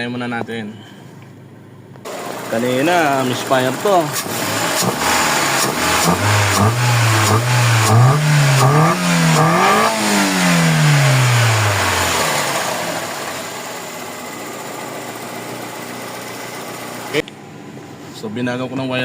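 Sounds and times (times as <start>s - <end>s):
car engine revving: 2.1s - 17.2s.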